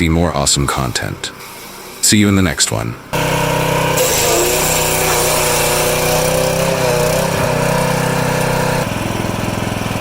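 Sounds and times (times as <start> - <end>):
small engine machine running: 3.2 - 10.0.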